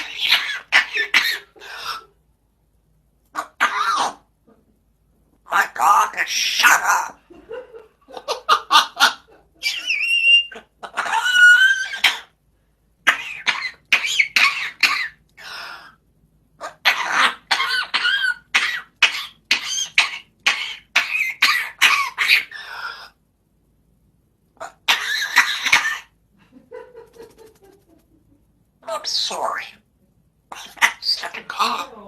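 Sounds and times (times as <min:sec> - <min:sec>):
parrot imitating coughs: 0:00.0 - 0:02.2, 0:03.4 - 0:04.2, 0:13.0 - 0:16.0, 0:16.6 - 0:23.1, 0:24.6 - 0:26.2
parrot squeaky sliding calls: 0:24.6 - 0:26.1.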